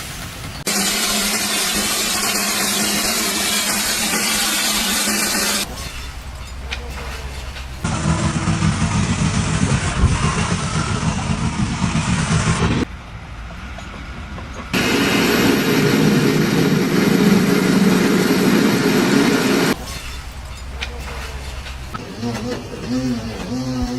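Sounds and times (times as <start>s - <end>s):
motor engine running: 7.9s - 12.8s.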